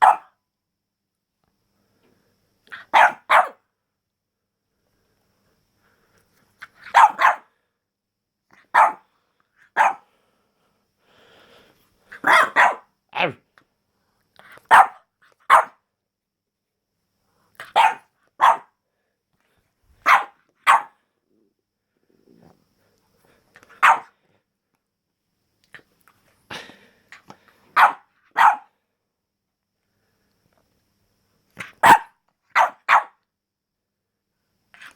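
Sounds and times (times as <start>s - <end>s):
puppy barking in sharp yaps: 0.0s - 0.4s, 2.7s - 3.6s, 6.8s - 7.5s, 8.6s - 9.0s, 9.8s - 10.0s, 12.2s - 12.9s, 14.7s - 15.8s, 17.6s - 18.7s, 20.0s - 21.0s, 23.8s - 24.1s, 27.8s - 28.7s, 31.6s - 33.2s.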